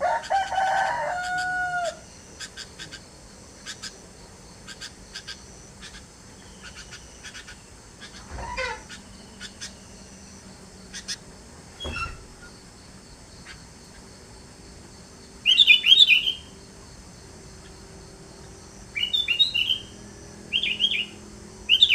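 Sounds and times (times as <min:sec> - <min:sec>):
bird chirping: 0:01.2 - 0:14.1, 0:15.2 - 0:16.7, 0:17.5 - 0:21.9
bird song bursts: 0:04.7 - 0:12.7, 0:15.4 - 0:16.6, 0:18.8 - 0:21.9.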